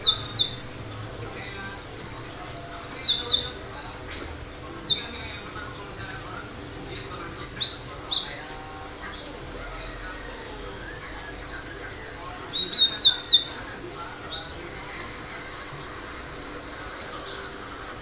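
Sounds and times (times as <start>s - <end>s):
bird singing high sharp notes: 0.0s - 0.8s, 2.5s - 3.6s, 4.6s - 5.4s, 7.3s - 9.2s, 10.2s - 13.6s.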